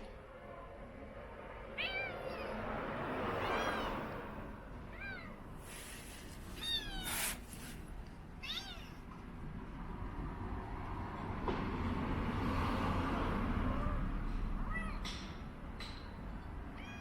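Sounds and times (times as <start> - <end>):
cat meowing: 1.8 - 2.6, 3.4 - 4.2, 6.5 - 7.4, 8.4 - 9.0, 16.8 - 17.0.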